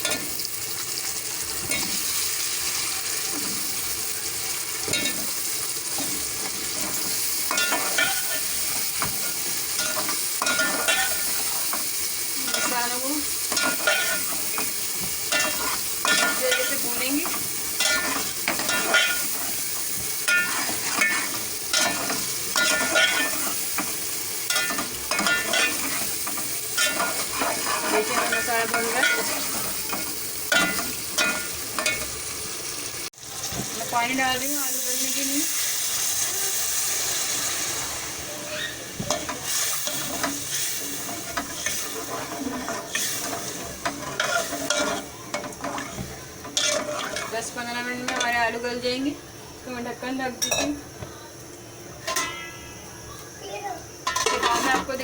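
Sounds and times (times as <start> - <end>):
potatoes sizzling in oil: 0.0 - 55.0
spoon scraping a pot: 20.3 - 23.9, 24.5 - 32.1, 38.6 - 47.4.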